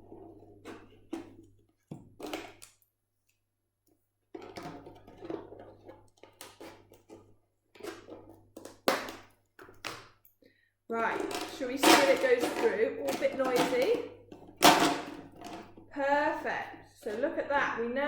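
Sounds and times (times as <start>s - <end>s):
plastic bottle crackling and creaking: 4.3s - 10.2s, 10.9s - 17.6s.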